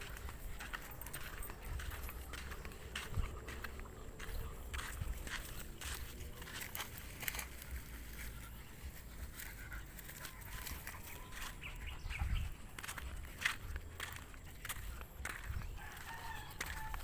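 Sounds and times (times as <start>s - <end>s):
wind rumble on microphone: 0.0s - 6.6s, 11.3s - 17.0s
footsteps: 0.0s - 17.0s.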